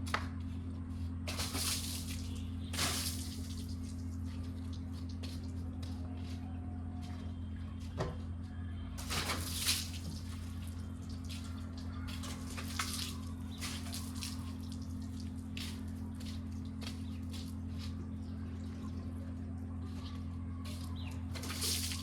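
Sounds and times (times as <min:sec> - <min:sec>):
low hum: 0:00.0 - 0:22.0
water running and splashing: 0:01.3 - 0:04.2, 0:09.0 - 0:15.9, 0:21.4 - 0:22.0.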